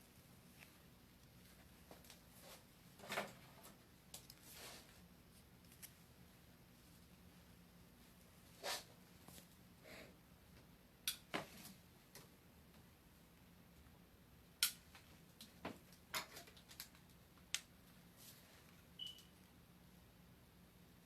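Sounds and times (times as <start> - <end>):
short high beep: 19.0 - 19.2.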